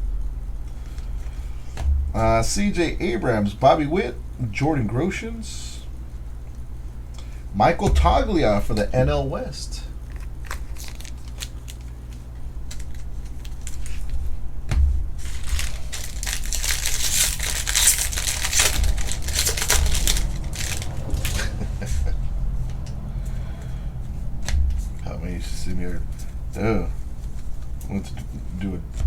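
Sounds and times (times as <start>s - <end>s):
steady low hum: 0.0s - 29.0s
cards shuffling: 10.0s - 14.3s, 15.2s - 22.0s
wrappers tearing and crinkling: 10.0s - 14.4s, 15.1s - 22.1s.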